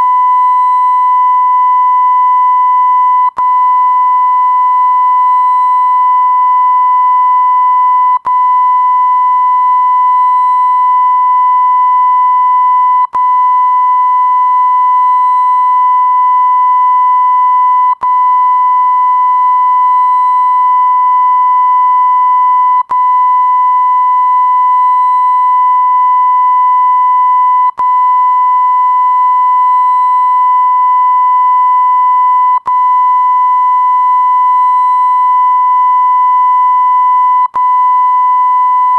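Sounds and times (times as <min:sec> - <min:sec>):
censor beep tone: 0:00.0 - 0:38.9.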